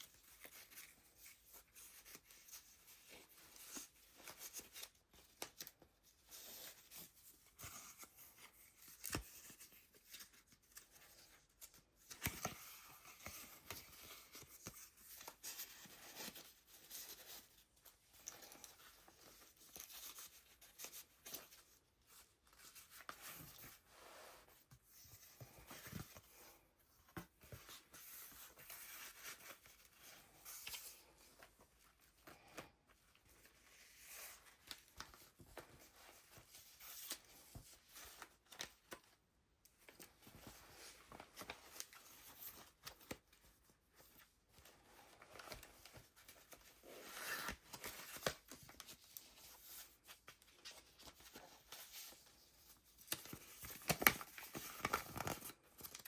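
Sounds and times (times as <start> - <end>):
paper pages rustling: 39.8 - 56.0.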